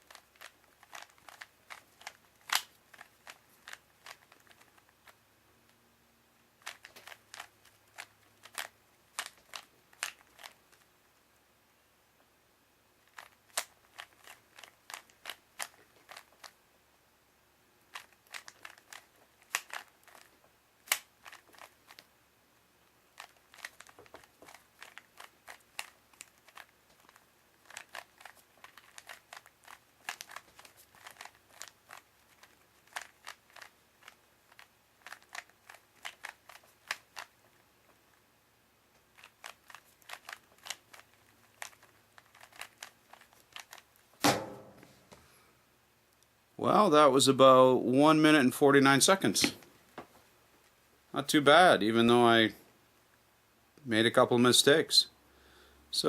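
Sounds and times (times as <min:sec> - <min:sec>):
puzzle cube clicking: 0:00.0 - 0:05.2, 0:06.6 - 0:10.8, 0:13.0 - 0:16.6, 0:17.9 - 0:22.1, 0:23.1 - 0:38.0, 0:39.0 - 0:44.2.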